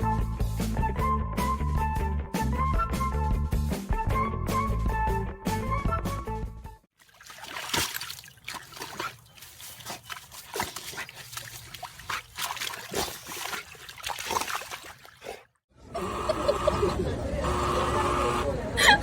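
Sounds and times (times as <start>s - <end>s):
dog splashing in water: 7.0s - 15.5s.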